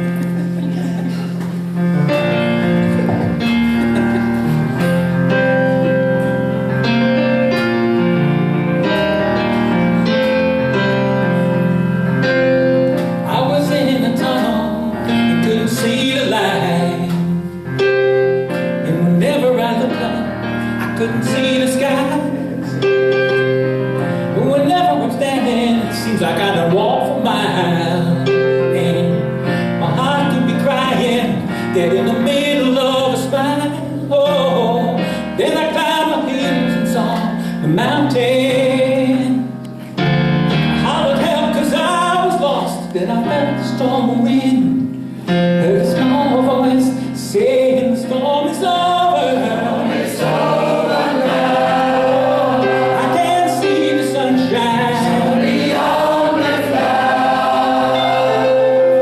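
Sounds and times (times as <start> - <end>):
piano accompaniment: 0.0 - 59.0
male lead voice singing: 13.3 - 17.4, 24.4 - 39.6
choir singing gospel: 48.6 - 59.0.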